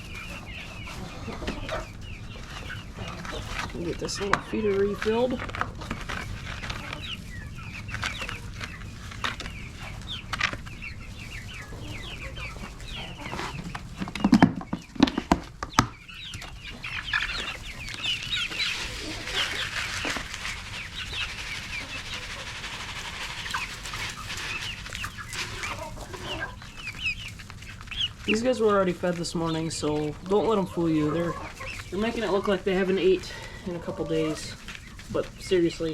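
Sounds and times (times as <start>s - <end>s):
chickens clucking: 0.0s - 35.9s.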